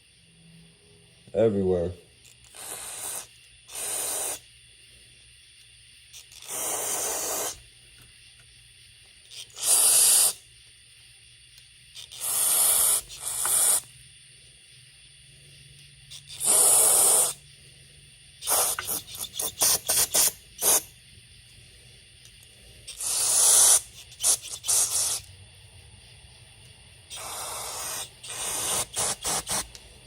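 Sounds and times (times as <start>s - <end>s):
aerosol spray hissing: 2.5s - 4.5s, 6.2s - 7.6s, 9.3s - 10.4s, 12.0s - 13.9s, 16.2s - 17.4s, 18.4s - 20.9s, 22.8s - 25.4s, 27.1s - 30.0s
quick short spray squirts: 18.4s - 20.9s, 22.9s - 25.2s, 27.1s - 29.8s.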